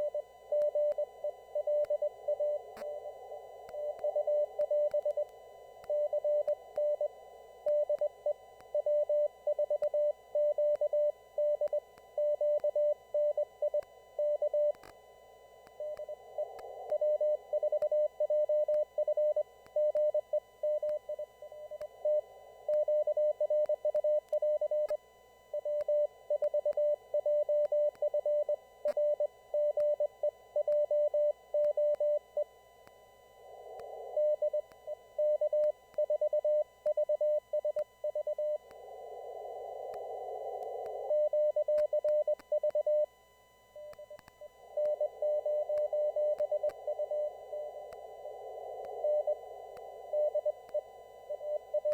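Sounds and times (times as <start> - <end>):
morse code beeping tone: 0.0 - 3.0, 40.9 - 51.9.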